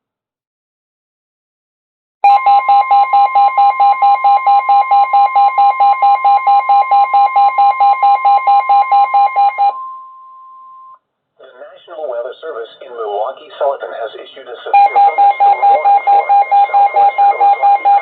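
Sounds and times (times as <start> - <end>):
pulsing electronic alarm beeping: 14.8 - 18.0
steady warning alarm tone: 14.8 - 18.0.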